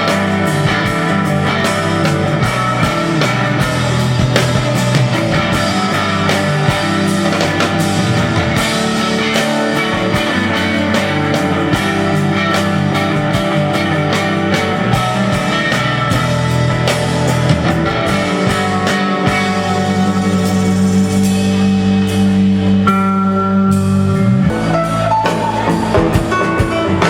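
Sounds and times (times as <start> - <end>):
rock music with guitars and drums: 0.0 - 27.0.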